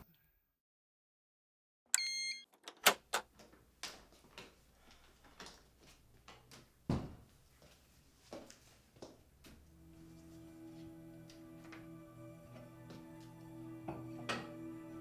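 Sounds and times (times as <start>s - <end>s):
electronic door lock beep: 2.0s - 3.2s
door latch clicking: 2.0s - 3.3s
knocks and clicks: 2.0s - 3.3s.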